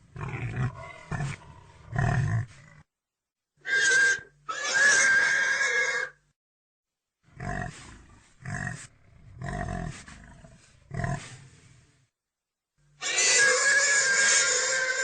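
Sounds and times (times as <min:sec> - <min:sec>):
pig grunting: 0:00.0 - 0:02.9, 0:07.3 - 0:11.6
pig squealing: 0:03.6 - 0:06.2, 0:13.0 - 0:15.0.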